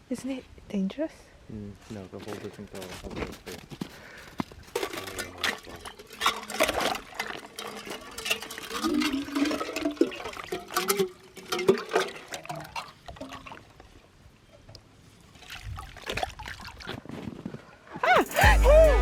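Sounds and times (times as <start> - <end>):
water splashing and sloshing: 4.8 - 14.0, 15.3 - 17.2.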